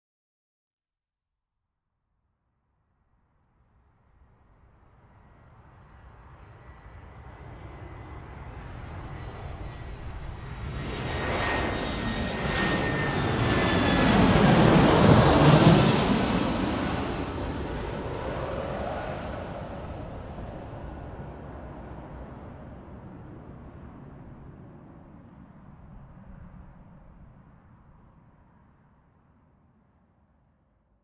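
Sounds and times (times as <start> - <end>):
high jet engine whine: 4.2 - 28.3
jet aircraft flying over: 4.2 - 28.6.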